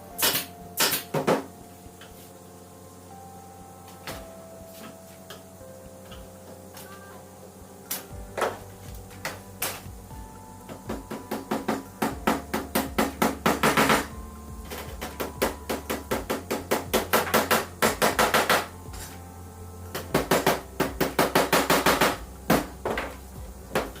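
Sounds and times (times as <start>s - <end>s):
hammer striking: 0.2s - 1.5s, 10.7s - 19.2s, 19.9s - 24.0s.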